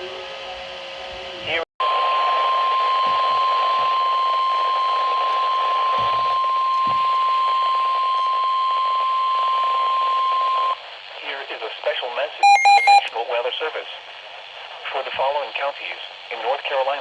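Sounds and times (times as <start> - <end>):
steady alarm beep: 12.4 - 13.1.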